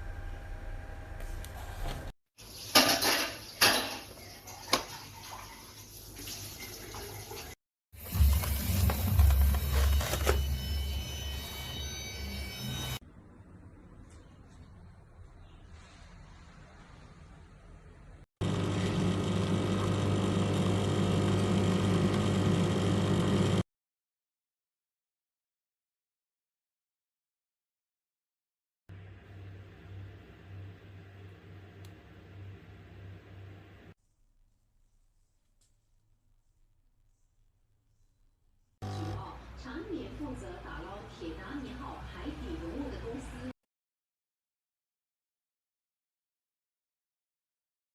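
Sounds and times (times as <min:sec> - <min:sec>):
dishes clattering: 0:02.6 - 0:05.0
coffee machine pump buzzing: 0:18.4 - 0:23.6, 0:38.8 - 0:39.3.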